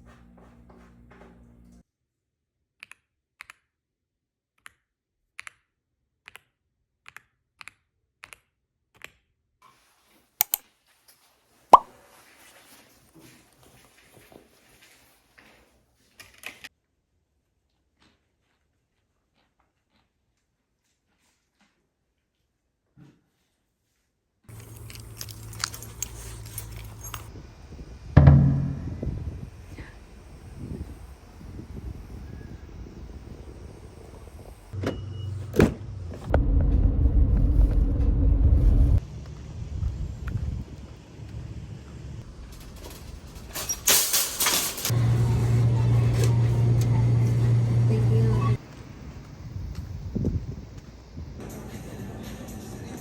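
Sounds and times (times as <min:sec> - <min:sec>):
keys jingling: 0:24.5 - 0:27.3, 0:42.9 - 0:45.0
door shutting with a thump: 0:28.2 - 0:29.2, 0:34.8 - 0:35.9
sharp knock with ring: 0:28.2 - 0:29.2
low hum: 0:28.2 - 0:29.9, 0:33.5 - 0:40.2.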